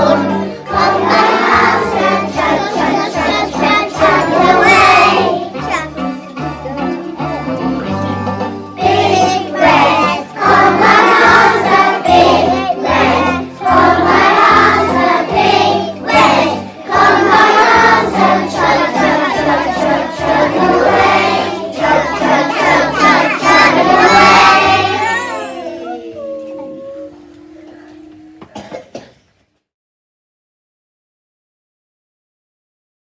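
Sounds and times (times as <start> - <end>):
musical accompaniment with bass line: 0.0 - 25.2
children singing together: 0.0 - 29.1.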